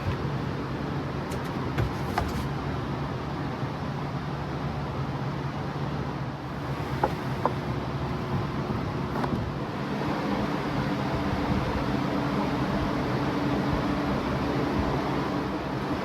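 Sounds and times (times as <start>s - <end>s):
steady mechanical hum: 0.0s - 16.0s.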